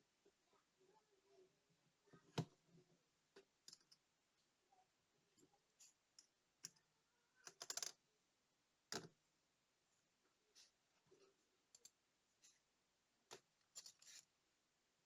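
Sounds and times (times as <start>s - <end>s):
small watch parts clicking: 7.4s - 8.0s.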